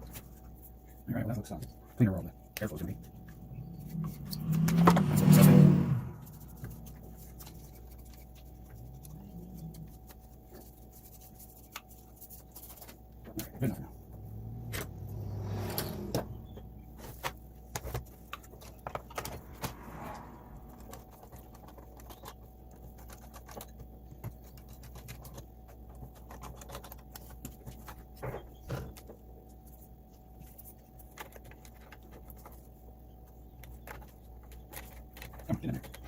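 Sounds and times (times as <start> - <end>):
plastic parts clicking and rattling: 20.9 - 29.8, 33.6 - 36.0.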